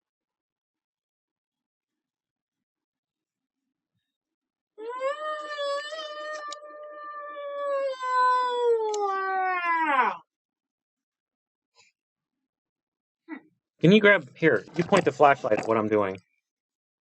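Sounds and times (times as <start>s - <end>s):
wailing vocal call: 4.8s - 10.2s.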